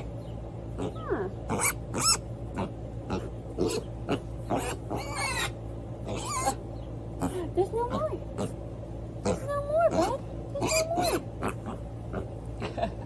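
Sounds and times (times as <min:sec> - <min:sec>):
pig squealing: 0:00.8 - 0:06.6, 0:09.2 - 0:12.3.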